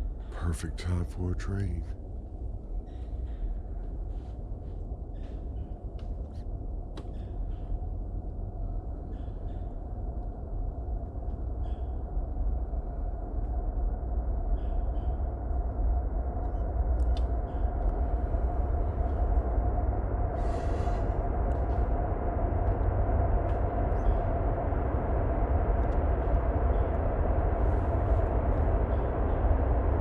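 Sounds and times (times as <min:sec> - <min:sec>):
distant train rumble: 0:12.6 - 0:30.0
faint clicks: 0:16.4 - 0:18.0.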